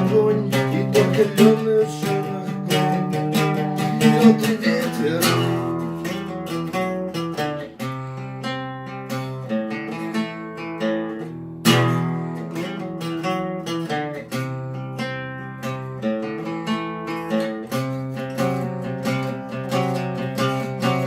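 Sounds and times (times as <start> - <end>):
acoustic guitar strumming chords: 0.0 - 21.0.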